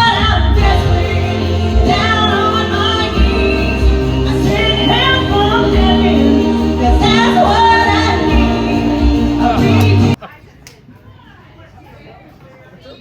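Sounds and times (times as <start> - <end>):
backing track with steady beat: 0.0 - 10.2
woman singing: 0.0 - 10.2.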